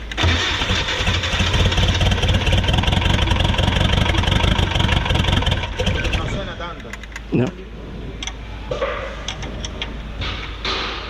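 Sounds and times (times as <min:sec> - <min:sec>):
diesel engine running: 0:00.0 - 0:07.3.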